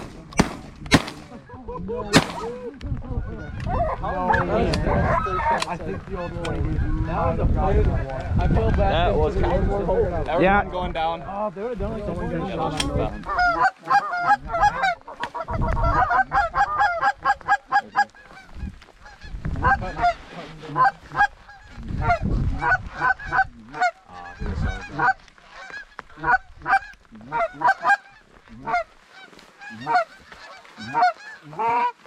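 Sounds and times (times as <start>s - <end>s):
low rumbles: 0.0s - 1.5s
geese honking: 13.2s - 32.0s.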